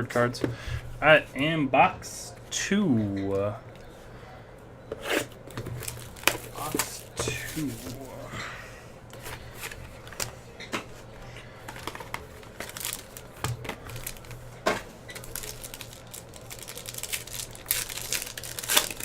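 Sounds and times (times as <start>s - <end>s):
wrapper crinkling: 5.5s - 8.3s, 11.7s - 14.4s, 15.1s - 19.0s.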